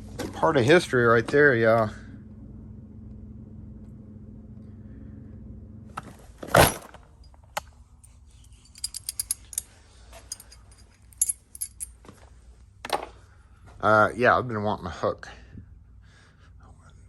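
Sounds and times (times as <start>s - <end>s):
metal lock parts clinking: 6.4s - 7.4s, 8.5s - 12.0s.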